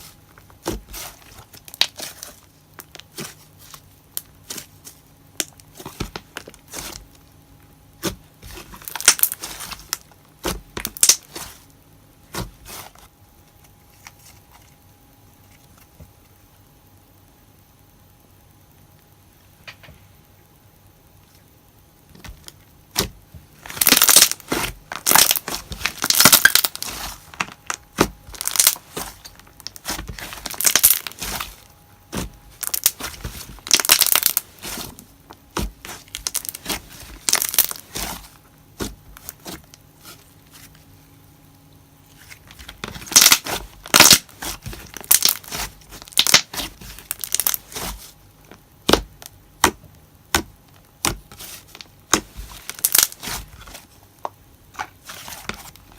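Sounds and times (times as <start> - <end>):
wet popping bubbles and crackles: 0.1 - 11.6, 22.1 - 40.8, 41.7 - 55.9.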